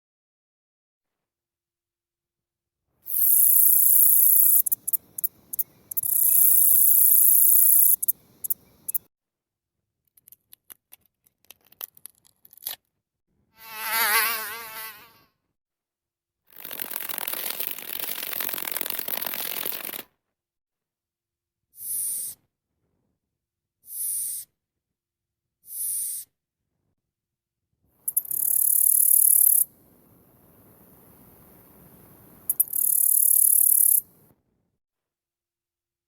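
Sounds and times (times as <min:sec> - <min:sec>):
shrill insect buzz: 0:03.1 - 0:09.0, 0:13.6 - 0:15.2, 0:28.1 - 0:29.7, 0:32.4 - 0:34.0
wavering flying insect buzz: 0:03.1 - 0:09.0, 0:13.6 - 0:15.2, 0:28.1 - 0:29.6, 0:31.8 - 0:34.0
steady hissing buzz: 0:03.3 - 0:09.0, 0:28.5 - 0:34.0
faint clicks: 0:03.4 - 0:09.0.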